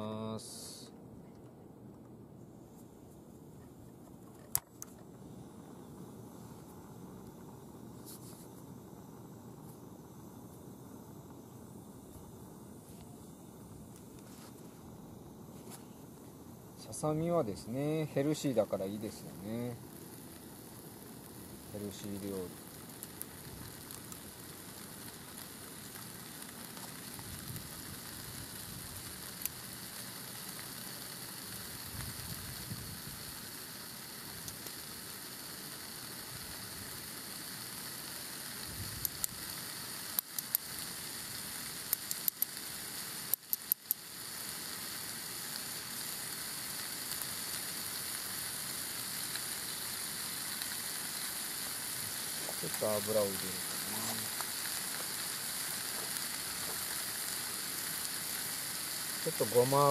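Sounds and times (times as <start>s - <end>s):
chicken sizzling in a pan: 5.6s - 59.9s
sharp clicks: 40.1s - 40.9s, 41.8s - 42.6s, 43.3s - 44.0s.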